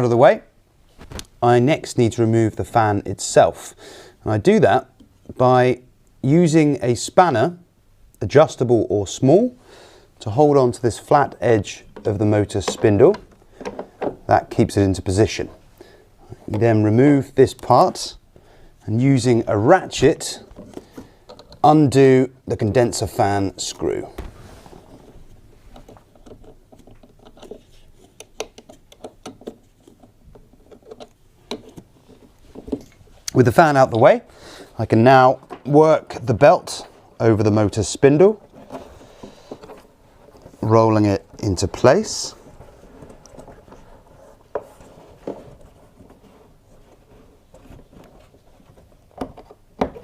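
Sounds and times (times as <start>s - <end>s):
rubbing and handling noises: 10.2s - 50.0s.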